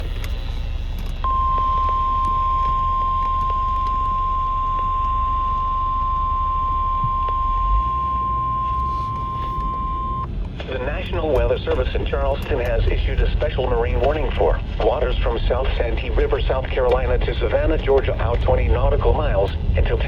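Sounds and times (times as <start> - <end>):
low background hum: 0.0 - 20.0
steady alarm tone: 1.2 - 10.3.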